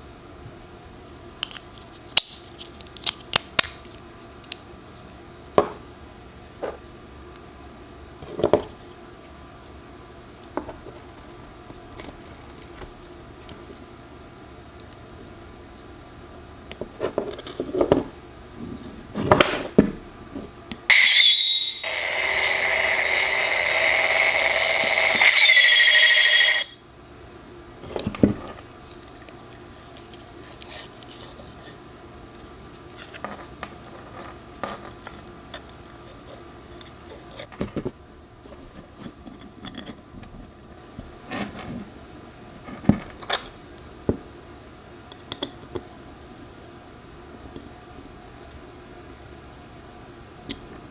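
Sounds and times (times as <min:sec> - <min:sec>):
lightsaber retraction sweep: 0:20.9 - 0:26.7
lightsaber ignition sweep: 0:20.9 - 0:26.8
lightsaber steady hum: 0:20.9 - 0:26.8.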